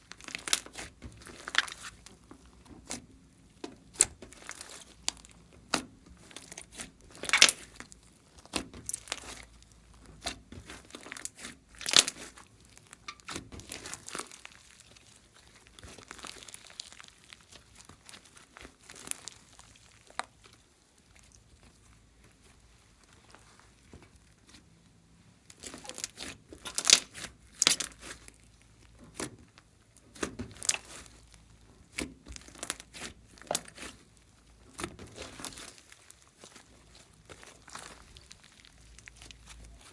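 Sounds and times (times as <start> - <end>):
slime squeezed by hand: 3.9 - 9.6, 10.2 - 21.6.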